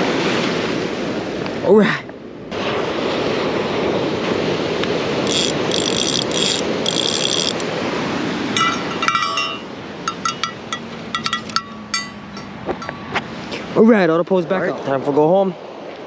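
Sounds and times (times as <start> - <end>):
surf washing: 0.0 - 16.0
fishing reel clicker ratcheting: 5.2 - 7.7.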